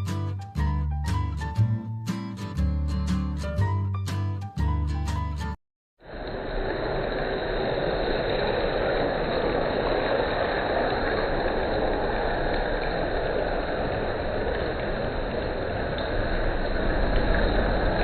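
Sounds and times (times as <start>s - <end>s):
steady rain hiss: 6.1s - 18.0s.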